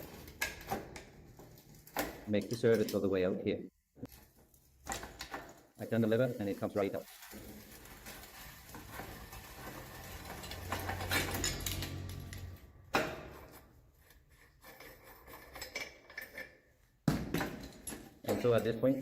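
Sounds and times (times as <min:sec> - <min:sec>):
metal parts clinking and scraping: 0:07.2 - 0:16.9.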